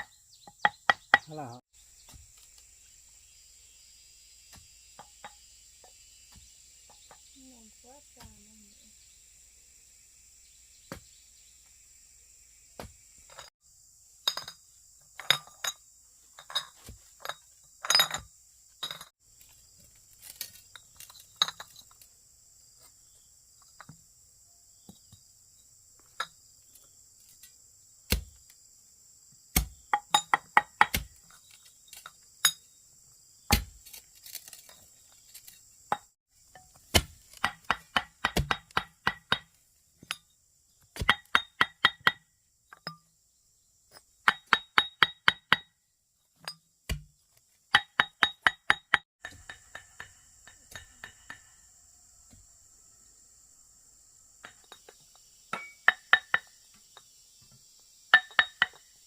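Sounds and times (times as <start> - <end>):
faint high insect drone: 1.3 - 59.0
hard objects clinking and knocking: 14.2 - 14.6, 15.2 - 15.8, 16.4 - 19.1, 20.2 - 22.0.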